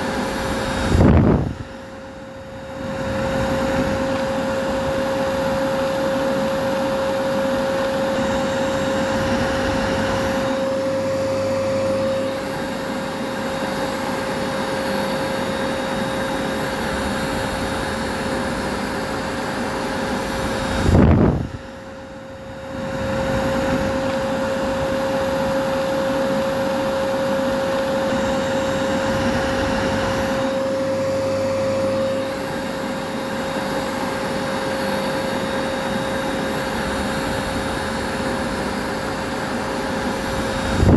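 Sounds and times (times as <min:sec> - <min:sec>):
vacuum cleaner running: 0:00.0 - 0:40.9.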